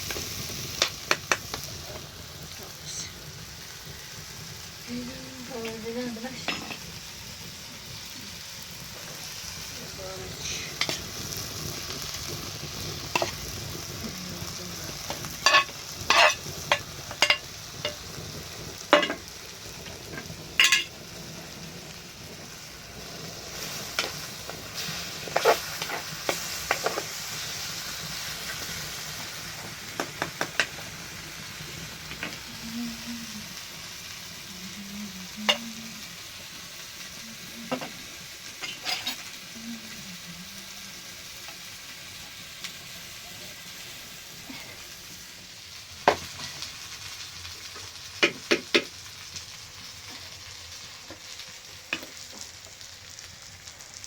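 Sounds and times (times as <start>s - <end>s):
food sizzling in a pan: 0.0s - 54.0s
utensil scraping a pan: 15.1s - 18.0s, 23.5s - 27.2s, 38.6s - 39.3s.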